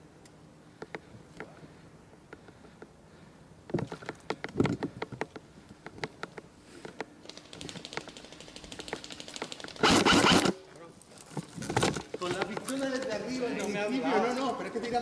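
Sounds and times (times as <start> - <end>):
fast faint rattle of clicks: 6.0 - 9.8.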